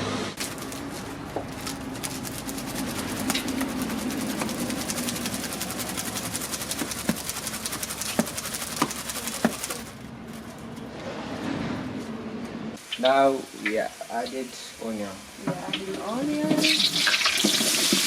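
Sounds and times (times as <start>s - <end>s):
rice rattling on winnowing tray: 0.4s - 10.0s.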